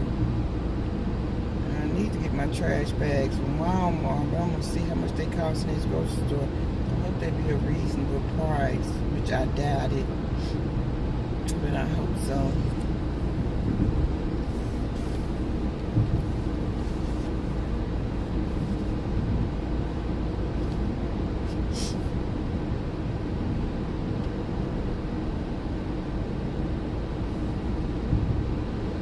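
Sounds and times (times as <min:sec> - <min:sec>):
car road and engine rumble: 0:00.0 - 0:29.0
brief hiss: 0:21.5 - 0:22.1.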